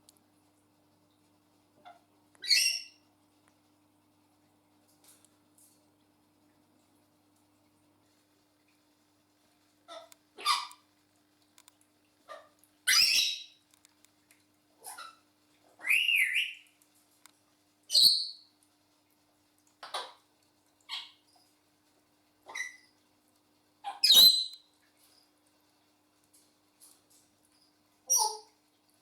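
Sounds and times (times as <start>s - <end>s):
parrot squawks: 9.9s - 10.8s, 12.3s - 13.5s, 15.8s - 16.6s.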